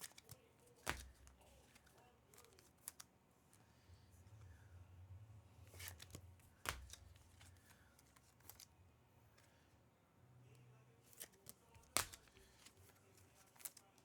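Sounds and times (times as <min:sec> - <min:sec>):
card shuffling: 0:00.0 - 0:04.5, 0:05.6 - 0:08.7, 0:11.0 - 0:14.0.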